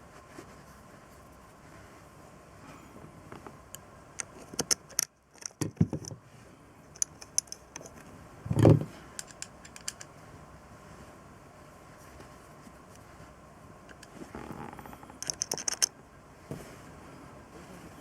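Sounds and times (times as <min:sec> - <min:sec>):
metal parts and tools clinking: 0:08.6 - 0:10.1, 0:15.2 - 0:15.9.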